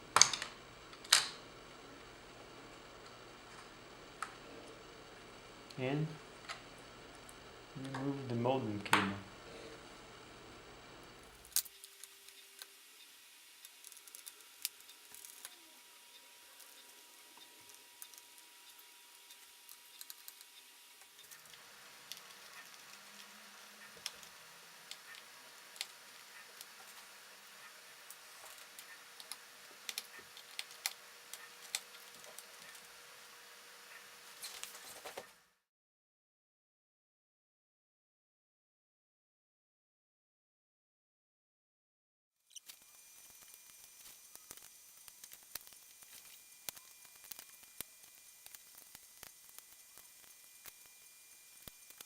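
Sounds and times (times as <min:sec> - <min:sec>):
faint hum: 0:00.0 - 0:35.5
small laptop parts clicking: 0:00.2 - 0:01.4.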